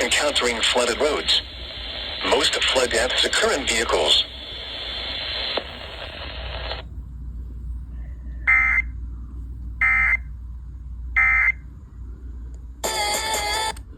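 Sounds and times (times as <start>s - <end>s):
radio hiss: 0.0s - 6.8s
low hum: 0.0s - 13.9s.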